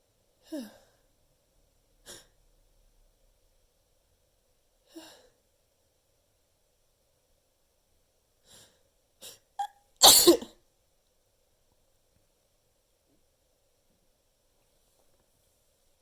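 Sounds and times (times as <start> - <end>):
person sneezing: 10.0 - 10.5.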